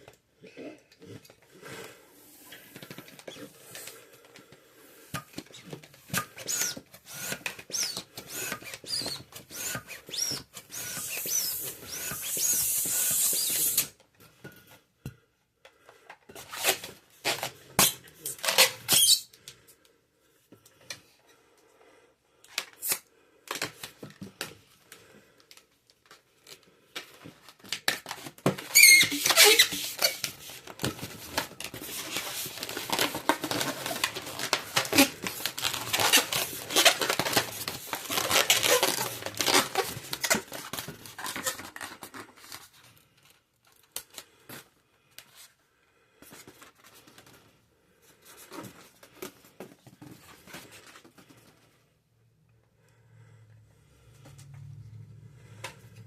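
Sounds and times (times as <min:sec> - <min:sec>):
rubbery balloon squeaks: 0:05.5 - 0:13.9, 0:16.4 - 0:19.3, 0:28.5 - 0:42.3.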